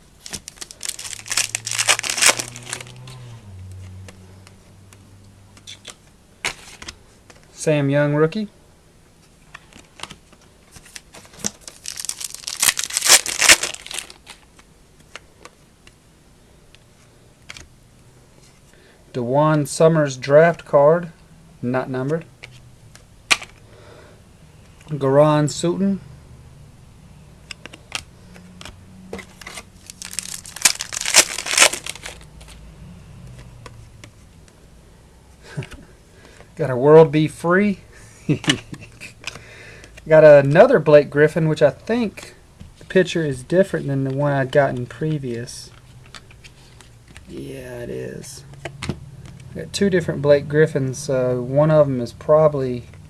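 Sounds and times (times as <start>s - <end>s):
foil wrapper crinkling: 0.0s - 3.0s, 10.8s - 14.5s, 29.3s - 32.6s
crackles: 0.0s - 3.9s, 9.6s - 15.2s, 29.3s - 32.6s.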